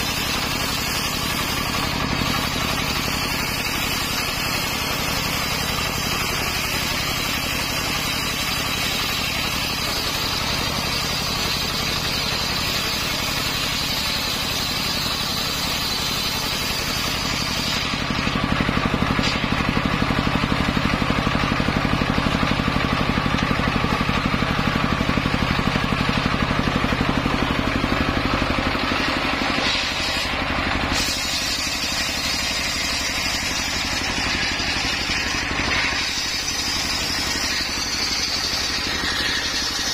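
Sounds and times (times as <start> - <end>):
car engine running steadily: 16.3 - 39.9.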